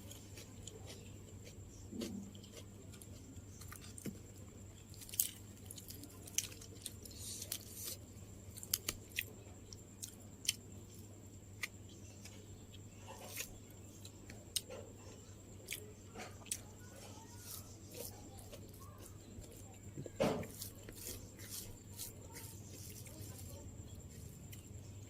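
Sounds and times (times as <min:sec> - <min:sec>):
chewing food: 0:00.0 - 0:25.0
mouth clicks and crunches: 0:04.8 - 0:10.7.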